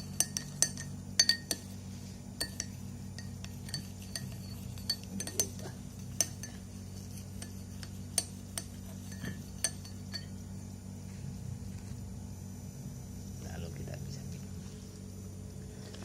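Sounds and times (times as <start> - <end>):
metal spoon clinking against glass: 0.0 - 1.7, 2.4 - 10.4.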